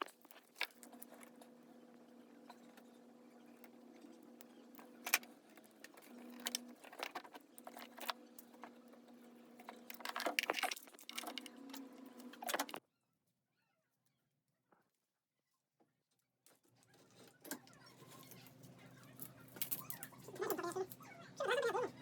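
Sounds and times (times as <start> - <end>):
wires and connectors rattling: 0.0 - 12.8, 16.8 - 21.2.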